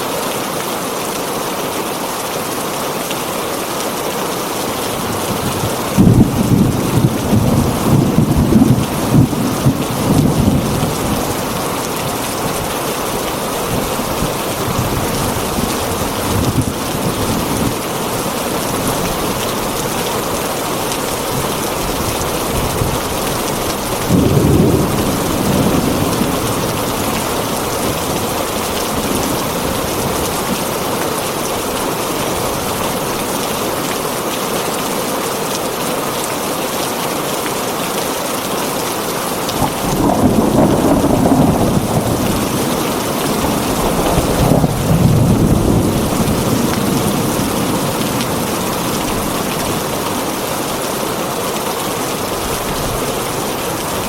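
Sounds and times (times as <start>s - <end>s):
heavy rain on a tin roof: 0.0s - 54.0s
thunder rumbling: 5.1s - 17.8s, 21.3s - 30.2s, 39.5s - 50.5s.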